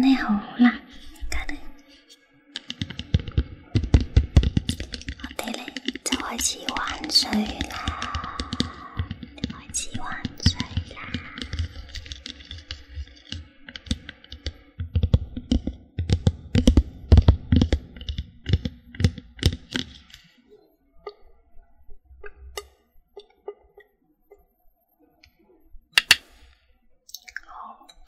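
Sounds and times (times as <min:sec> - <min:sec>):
small objects clicking and tapping: 0:01.0 - 0:20.4, 0:26.0 - 0:26.3.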